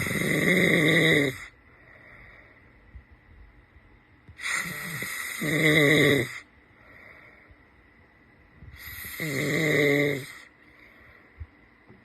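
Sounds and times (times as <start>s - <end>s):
man snoring loudly: 0.0s - 1.5s, 4.4s - 6.4s, 8.8s - 10.4s.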